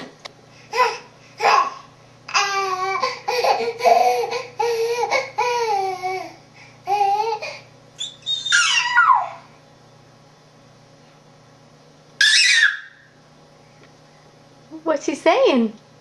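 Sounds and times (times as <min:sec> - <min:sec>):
child babbling and squealing: 0:08.1 - 0:09.5.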